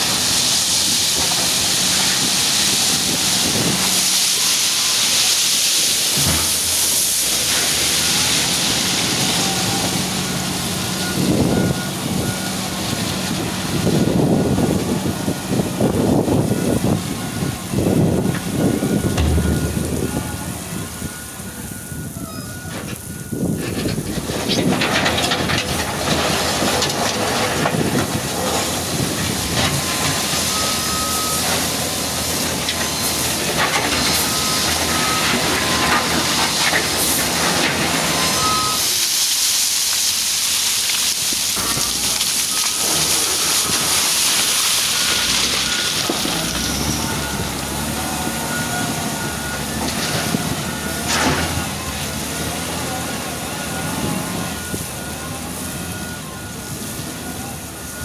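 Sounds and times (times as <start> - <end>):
diesel engine working: 0.0 - 39.1, 41.2 - 58.0
machine clanking and scraping: 19.0 - 21.5, 22.7 - 30.3.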